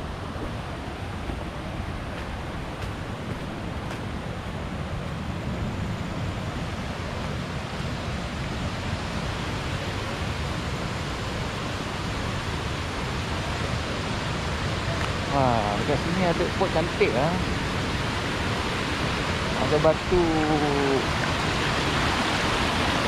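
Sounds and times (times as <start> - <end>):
waterfall rushing: 4.4 - 23.0.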